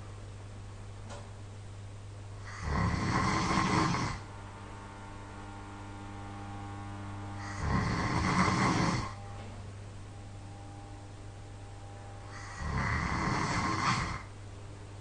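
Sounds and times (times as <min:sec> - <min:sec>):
steady low hum: 0:00.0 - 0:15.0
person snoring: 0:02.4 - 0:04.3, 0:07.3 - 0:09.2, 0:12.2 - 0:14.3.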